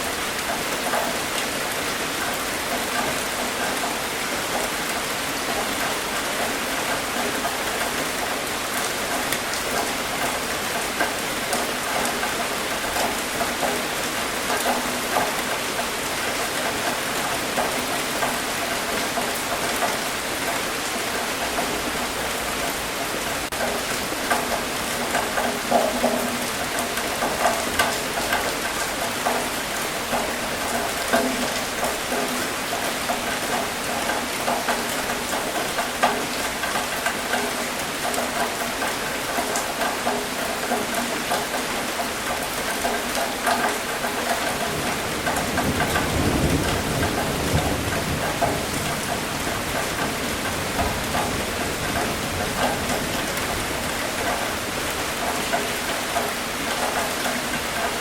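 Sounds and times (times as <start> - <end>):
steady rain falling: 0.0 - 58.0
low rumble of thunder: 44.8 - 53.0.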